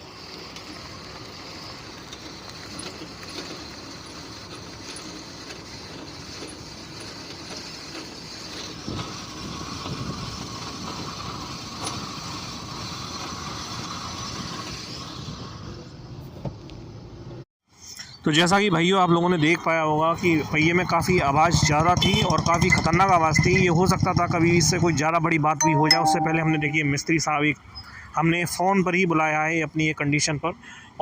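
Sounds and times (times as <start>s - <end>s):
broken wheel bearing noise: 0.2s - 14.0s.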